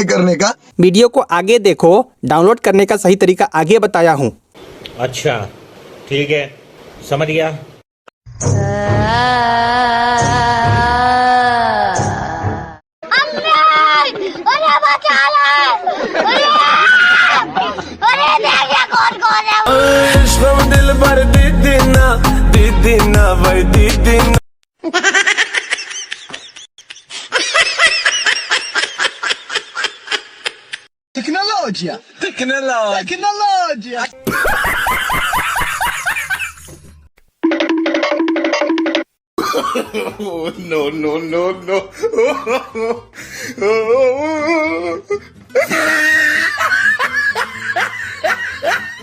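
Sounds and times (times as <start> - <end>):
laugh-like voice sounds: 13.1 - 19.6, 39.4 - 49.0
high-pitched giggling laughter: 15.7 - 19.5, 24.8 - 30.8, 45.6 - 49.0.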